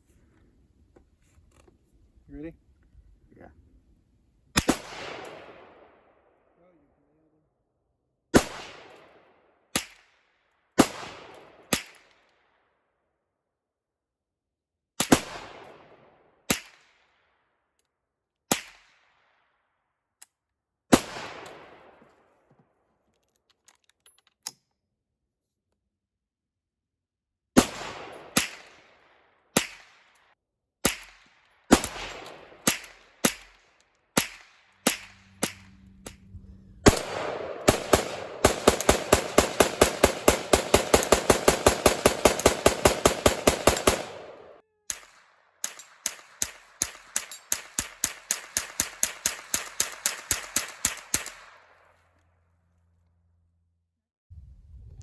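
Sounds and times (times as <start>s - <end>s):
gunshots from handguns and rifles: 4.6s - 6.2s, 8.3s - 12.4s, 15.0s - 17.2s, 18.5s - 19.4s, 20.9s - 22.5s, 27.6s - 36.2s, 36.8s - 52.0s.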